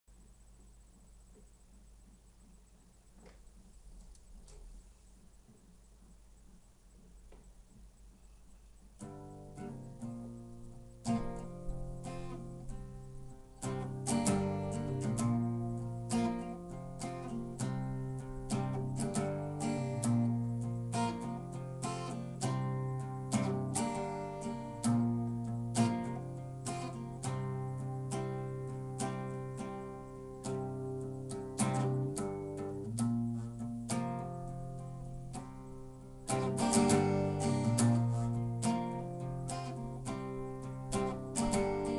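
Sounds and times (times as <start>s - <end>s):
acoustic guitar strumming chords: 9.0s - 41.9s.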